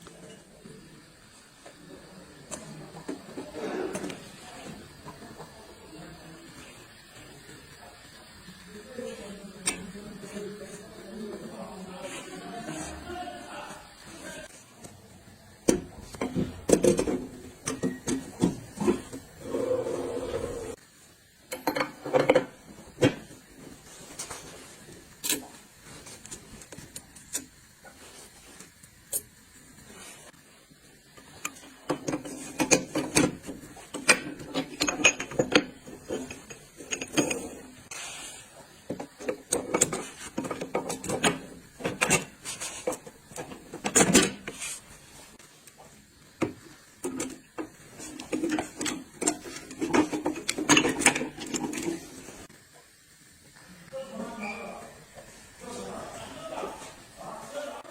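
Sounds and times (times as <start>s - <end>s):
metal parts clicking and knocking: 31.9s - 37.6s.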